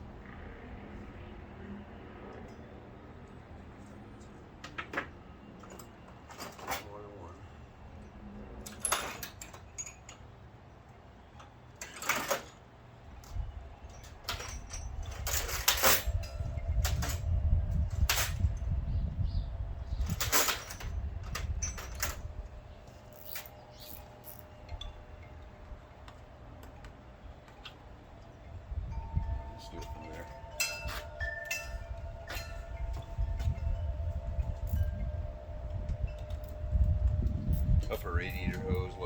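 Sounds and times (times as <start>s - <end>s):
low rumble: 28.5s - 39.0s.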